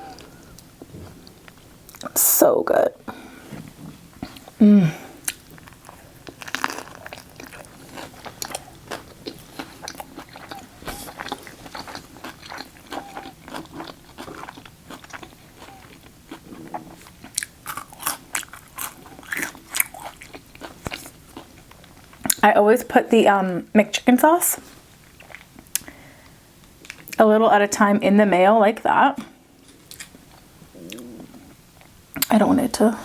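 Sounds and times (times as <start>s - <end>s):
crunchy chewing: 5.2s - 22.4s, 29.6s - 32.3s.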